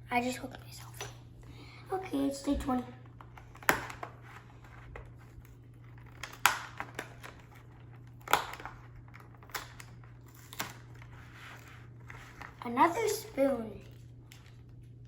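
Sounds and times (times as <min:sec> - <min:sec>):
steady low hum: 0:00.0 - 0:15.0
packaging crinkling: 0:03.0 - 0:15.0.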